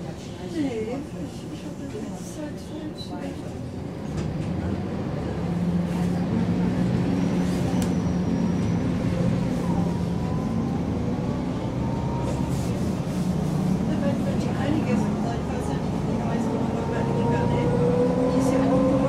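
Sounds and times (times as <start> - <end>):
bus engine humming: 0.0 - 19.0.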